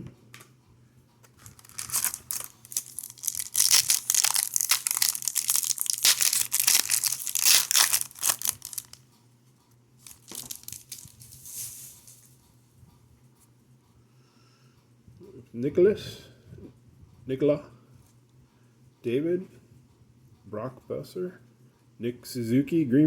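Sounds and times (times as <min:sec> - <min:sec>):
foil wrapper crinkling: 0:01.3 - 0:09.0, 0:10.0 - 0:12.4.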